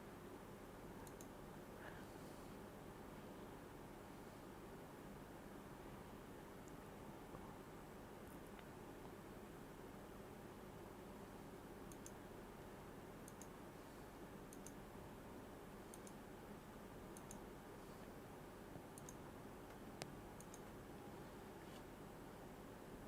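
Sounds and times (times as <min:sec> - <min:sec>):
faint sharp double clicks: 0:11.9 - 0:12.2, 0:13.2 - 0:13.5, 0:14.5 - 0:14.8, 0:17.2 - 0:17.4.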